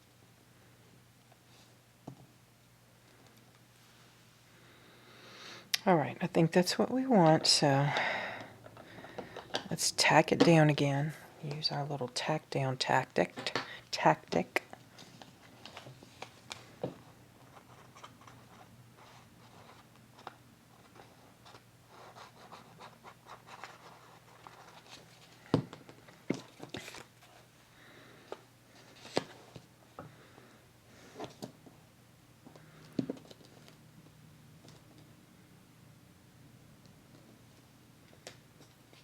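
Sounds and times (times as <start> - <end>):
paper rustling and rubbing: 20.8 - 25.4.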